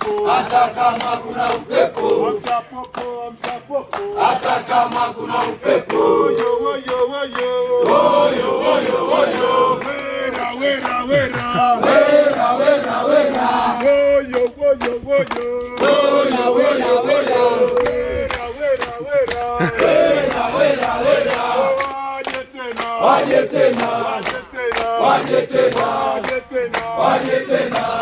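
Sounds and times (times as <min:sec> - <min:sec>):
men singing in chorus: 0:00.0 - 0:28.0
sharp claps: 0:00.0 - 0:28.0.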